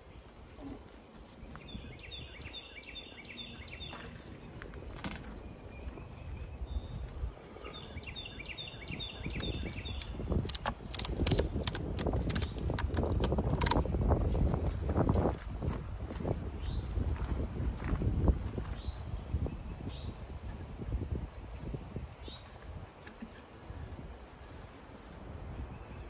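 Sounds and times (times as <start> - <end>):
songbird singing: 0.0 - 15.6, 16.6 - 26.0
hive parts being handled: 9.4 - 13.8.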